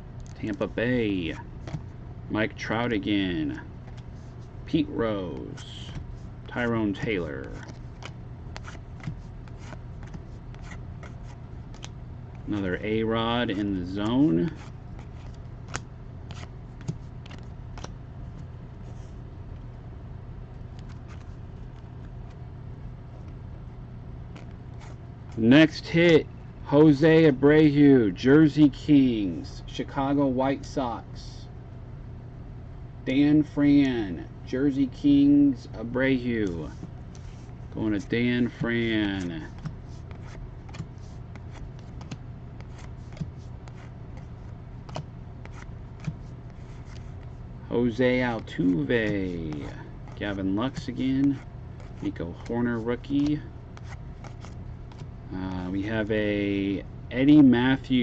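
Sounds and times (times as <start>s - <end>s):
steady low hum: 0.0s - 58.0s
cards being flipped through: 5.4s - 19.1s, 20.7s - 22.4s, 24.3s - 25.4s, 36.3s - 55.1s.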